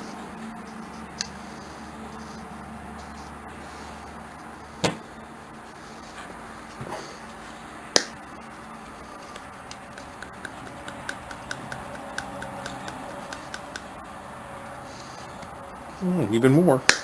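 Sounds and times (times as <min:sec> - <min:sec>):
sharp click: 0:08.0 - 0:08.2.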